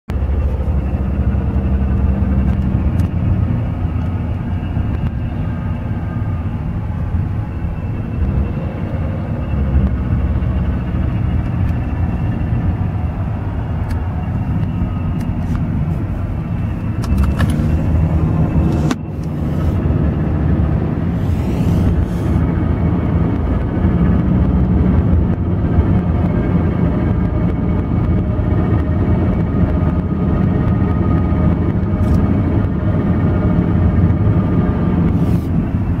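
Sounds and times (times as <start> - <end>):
car cabin rumble: 0.1 - 36.0.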